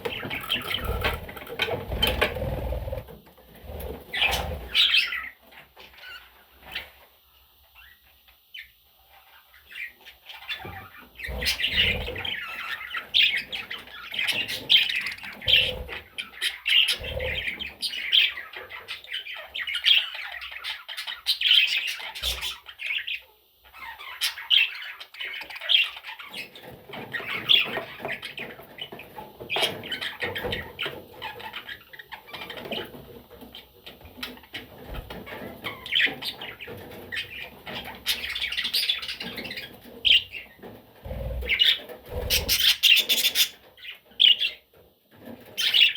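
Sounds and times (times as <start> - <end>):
budgerigar chattering: 41.4 - 43.6.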